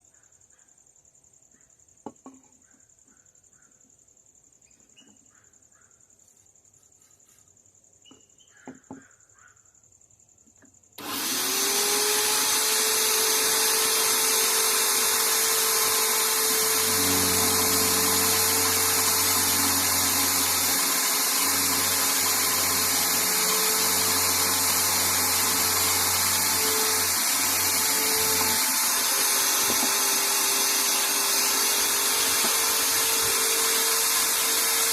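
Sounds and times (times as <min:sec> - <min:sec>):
electric drill whining: 0:11.0 - 0:34.9
deeper hum: 0:16.5 - 0:28.6.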